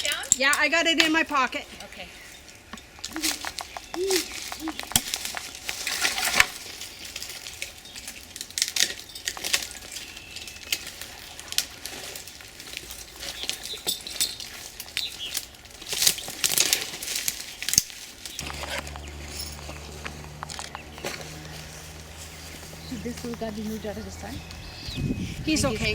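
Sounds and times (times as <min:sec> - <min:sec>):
rustling: 0:00.0 - 0:25.9
steady low hum: 0:18.4 - 0:25.6.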